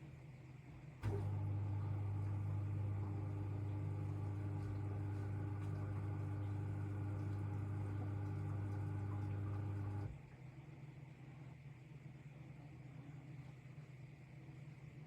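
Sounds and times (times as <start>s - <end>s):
washing machine humming: 0.0s - 15.0s.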